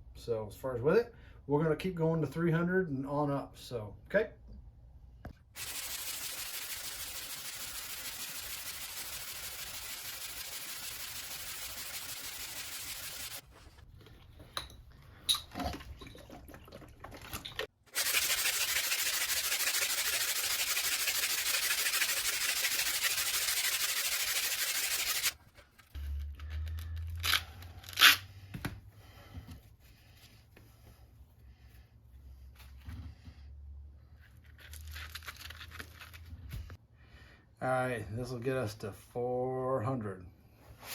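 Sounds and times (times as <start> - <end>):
sandpaper scratching: 5.6 - 13.4, 17.9 - 25.4.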